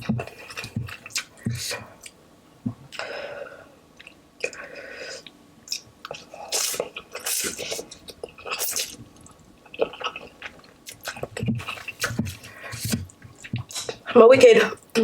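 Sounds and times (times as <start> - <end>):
wet chewing sounds: 5.7 - 14.0.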